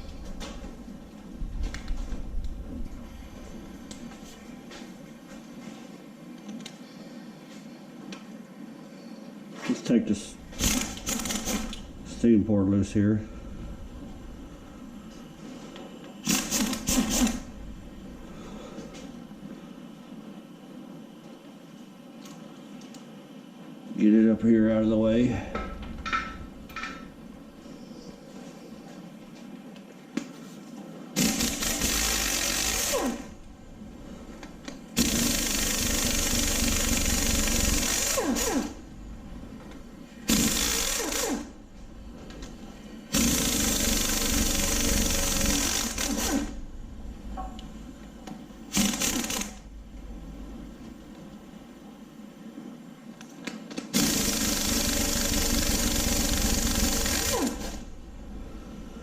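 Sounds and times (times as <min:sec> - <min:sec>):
pneumatic impact wrench hammering: 0:10.6 - 0:11.8, 0:16.2 - 0:17.5, 0:31.2 - 0:33.3, 0:35.0 - 0:38.8, 0:40.3 - 0:41.5, 0:43.1 - 0:46.6, 0:48.7 - 0:49.6, 0:53.9 - 0:57.9
tool spinning down whine: 0:31.2 - 0:33.4, 0:35.0 - 0:38.9, 0:40.3 - 0:41.6, 0:43.1 - 0:46.6, 0:48.7 - 0:49.6, 0:54.0 - 0:58.0.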